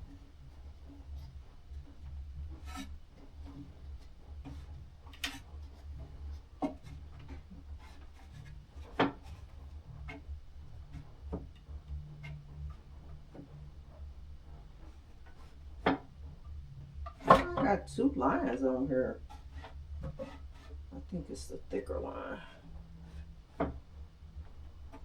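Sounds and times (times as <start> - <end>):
light clicks and knocks of handling: 0.1 - 13.5.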